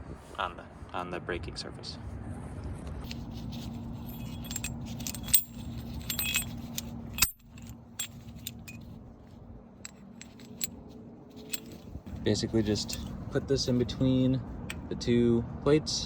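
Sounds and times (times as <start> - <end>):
metallic clinks of tools and parts: 3.1 - 9.0, 9.8 - 14.1.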